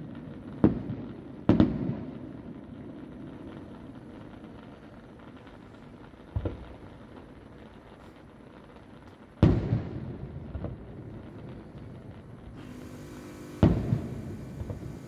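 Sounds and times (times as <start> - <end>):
small firework pops: 0.0 - 15.0
firework shells booming: 9.4 - 15.0.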